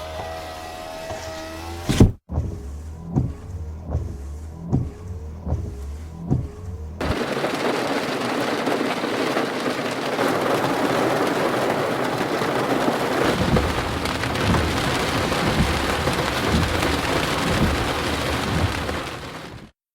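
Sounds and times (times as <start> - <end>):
low rumbles: 1.9 - 9.6, 12.6 - 19.7
dense rain hiss: 7.0 - 19.7.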